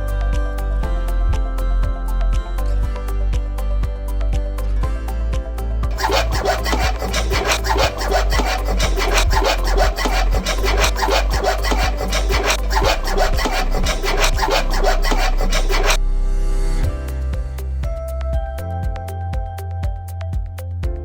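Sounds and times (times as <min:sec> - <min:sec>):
hand tool rasping on plastic pipe: 0:05.9 - 0:16.0.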